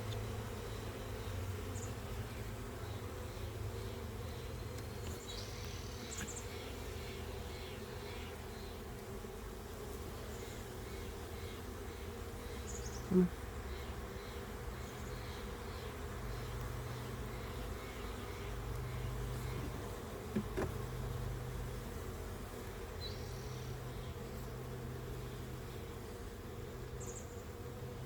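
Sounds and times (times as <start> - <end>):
bees buzzing: 0.0 - 28.0
knocks on hive: 20.3 - 20.8.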